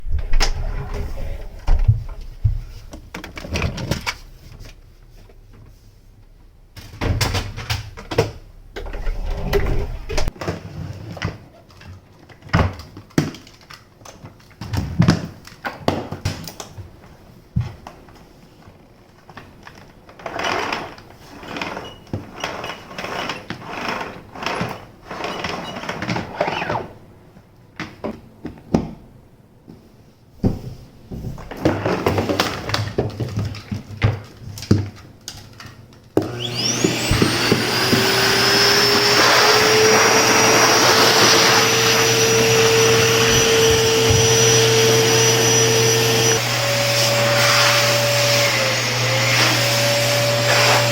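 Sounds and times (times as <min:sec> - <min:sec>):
rustling of things handled: 0:00.0 - 0:15.6.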